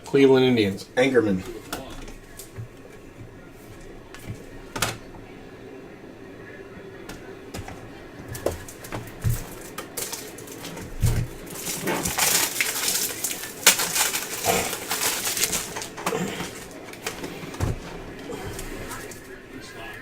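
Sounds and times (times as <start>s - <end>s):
card wrappers crinkling: 8.3s - 17.6s.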